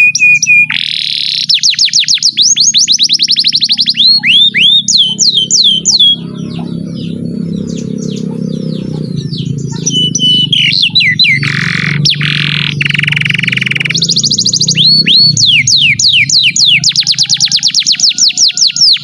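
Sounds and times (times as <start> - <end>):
canary singing: 0.0 - 19.0
steady low hum: 3.2 - 17.8.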